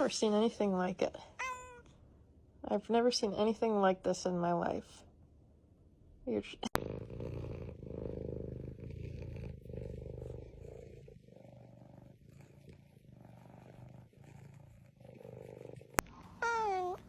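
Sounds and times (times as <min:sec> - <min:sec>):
cat purring: 0:06.4 - 0:17.0.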